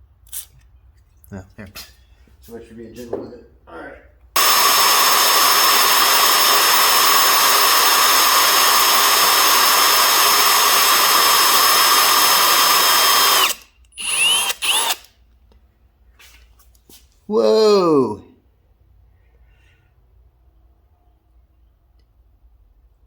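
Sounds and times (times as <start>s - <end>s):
electric drill boring into bolt: 4.4s - 15.2s.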